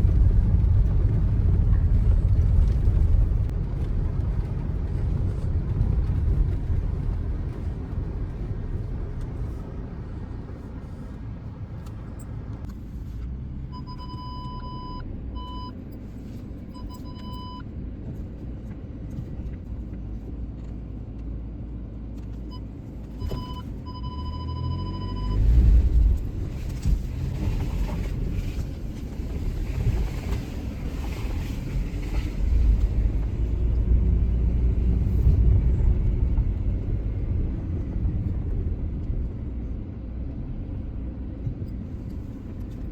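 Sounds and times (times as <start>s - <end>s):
car low rumble: 0.0s - 42.9s
parking sensor beeping: 13.7s - 15.8s, 16.8s - 17.6s, 22.5s - 25.5s.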